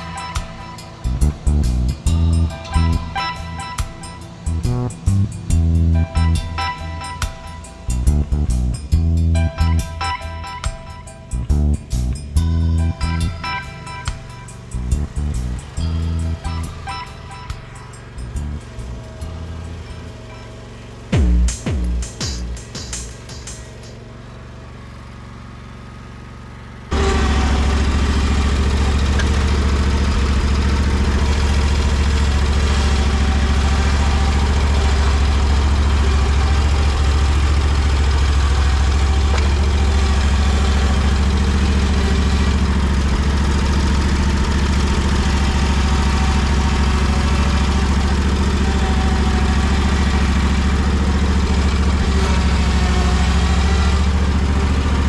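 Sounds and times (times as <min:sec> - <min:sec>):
mower engine running: 0:00.0 - 0:55.0.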